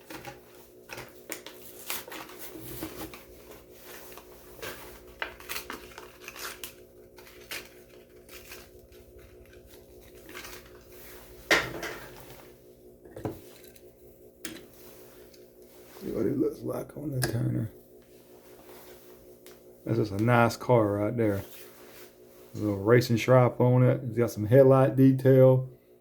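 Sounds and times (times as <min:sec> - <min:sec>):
plastic packaging crinkling: 0:00.0 - 0:12.5
plastic cracking: 0:05.1 - 0:10.9.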